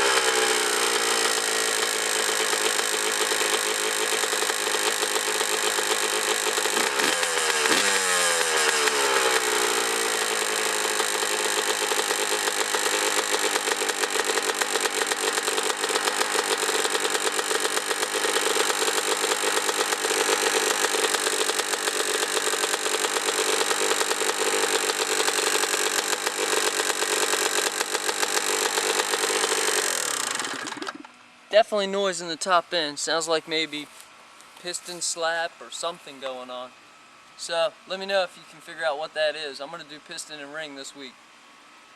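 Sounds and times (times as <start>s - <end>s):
engine tapping noise: 0.0s - 31.2s
two-stroke engine running: 0.0s - 31.2s.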